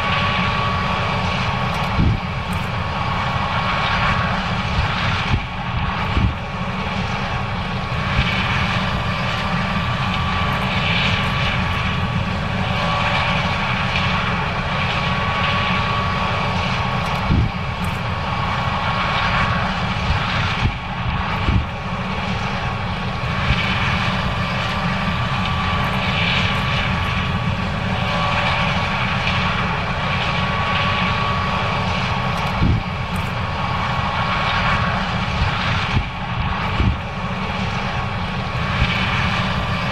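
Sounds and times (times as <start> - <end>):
combine harvester rumble: 0.0 - 39.9
high steady whine: 0.0 - 39.9.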